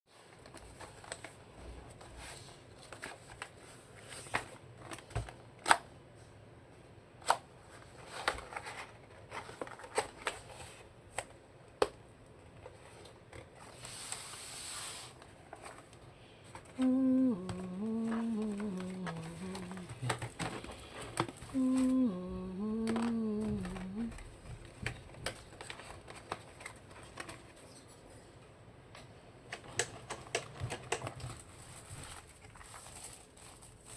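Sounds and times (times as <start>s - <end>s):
person humming: 16.7s - 24.4s.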